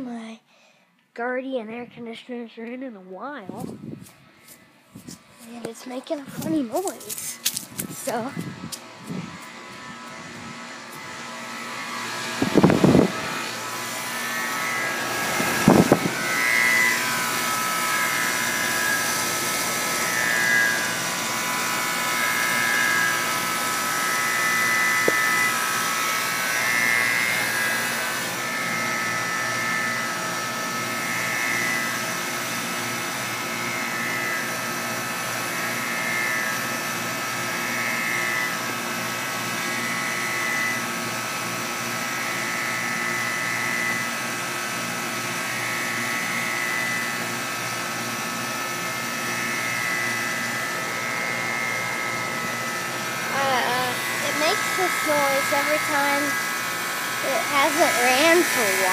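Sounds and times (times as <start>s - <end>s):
air conditioner humming: 0.0s - 32.4s, 49.6s - 58.9s
high wavering whine: 3.4s - 58.9s.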